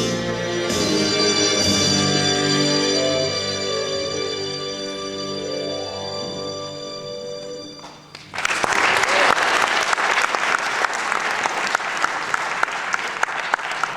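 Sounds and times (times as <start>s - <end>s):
music holding final chord: 0.0s - 7.9s
audience applause: 7.8s - 13.9s.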